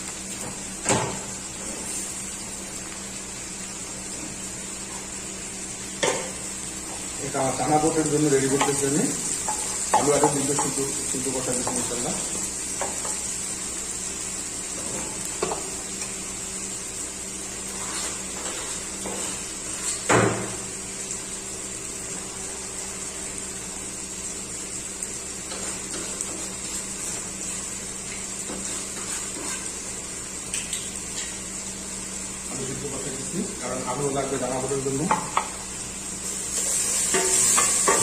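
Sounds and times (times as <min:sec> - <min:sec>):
steady hiss: 0:01.4 - 0:38.0
pots and utensils clinking: 0:36.6 - 0:38.0.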